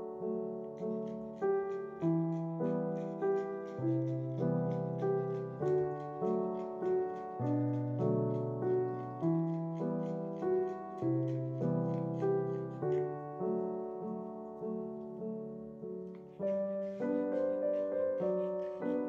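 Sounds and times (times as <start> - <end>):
piano music: 0.0 - 19.0.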